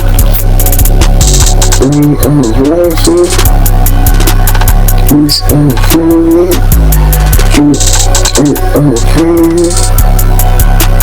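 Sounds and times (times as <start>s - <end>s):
loud electronic music: 0.0s - 11.0s.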